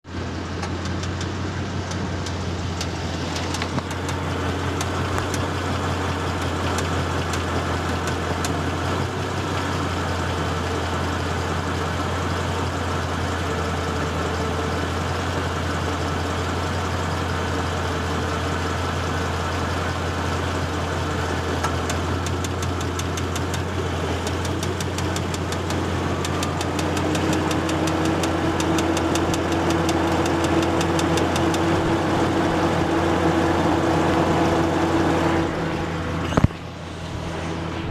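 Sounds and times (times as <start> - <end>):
car engine idling: 0.0 - 37.9
rapid ticking engine knock: 0.4 - 8.6, 21.6 - 31.9.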